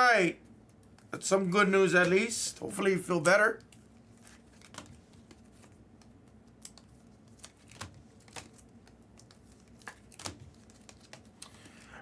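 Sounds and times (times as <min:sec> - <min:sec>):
room hiss: 0:00.0 - 0:00.4, 0:01.1 - 0:03.6.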